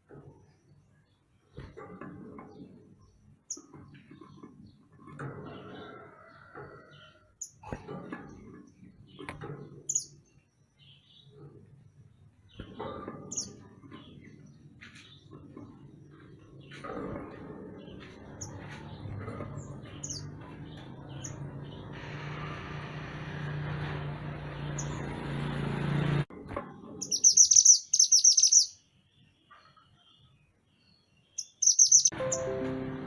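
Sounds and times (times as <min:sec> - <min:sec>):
songbird chirping trills: 0:27.0 - 0:30.4, 0:31.0 - 0:33.0.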